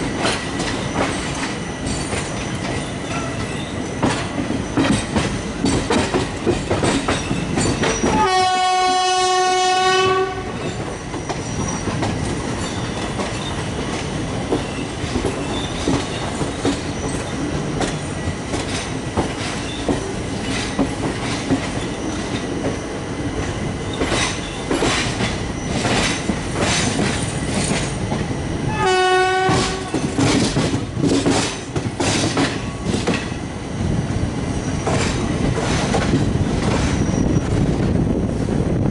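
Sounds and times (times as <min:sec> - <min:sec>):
wheels clacking over rail joints: 0:00.0 - 0:22.8, 0:23.4 - 0:28.3, 0:29.0 - 0:33.4, 0:34.7 - 0:37.2
train rumbling: 0:00.0 - 0:38.9
locomotive horn blast: 0:08.1 - 0:10.6, 0:28.7 - 0:30.1.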